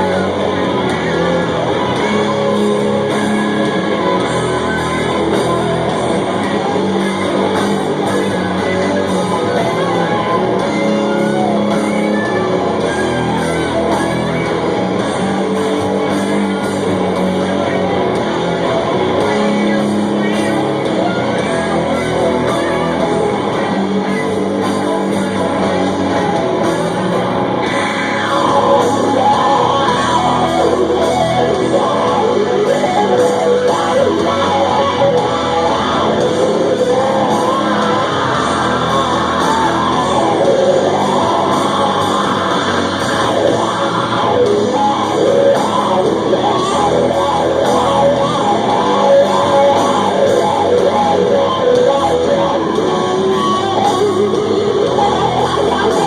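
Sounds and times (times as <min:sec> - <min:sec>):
heavy guitars: 0:00.0 - 0:56.0
sung and yelled vocals: 0:16.9 - 0:56.0.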